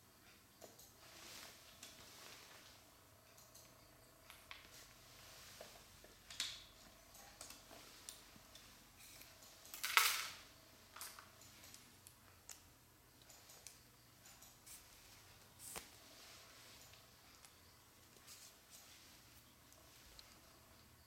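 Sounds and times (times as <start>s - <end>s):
scrape or rustle: 1.0s - 2.8s.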